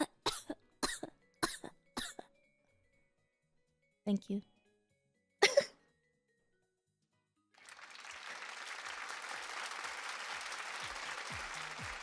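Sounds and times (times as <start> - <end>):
applause: 7.6 - 12.0.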